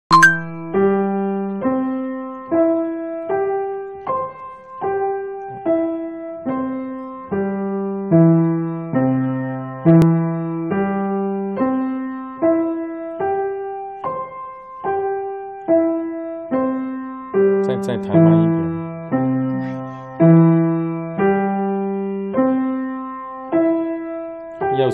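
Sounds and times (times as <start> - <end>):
piano arpeggios: 0.0 - 24.9.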